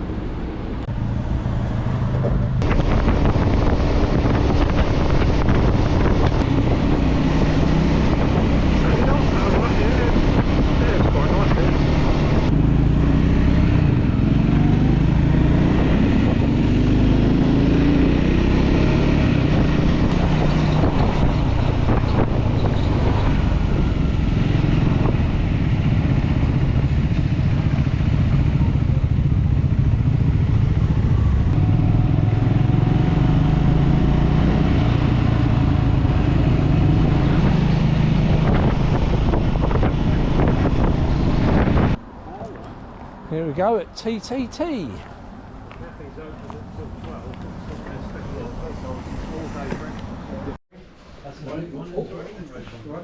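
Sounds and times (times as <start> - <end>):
motorcycle engine running: 21.1 - 33.5.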